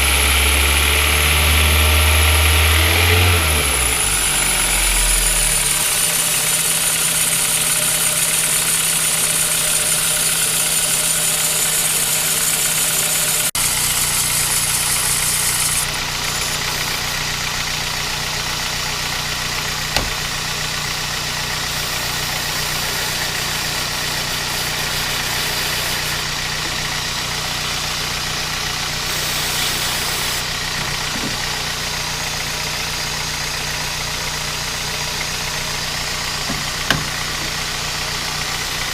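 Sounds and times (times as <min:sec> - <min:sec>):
car engine idling: 0:00.0 - 0:25.2, 0:26.2 - 0:38.9
short knock: 0:19.9 - 0:20.4, 0:36.5 - 0:37.6.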